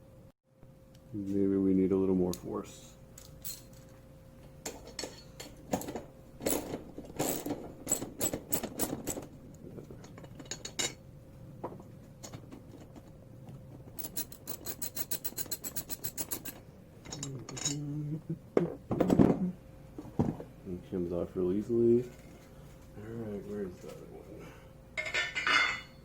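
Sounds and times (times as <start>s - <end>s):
ratchet clicks: 14.0s - 17.2s
socket wrench clinking on metal: 14.0s - 17.8s.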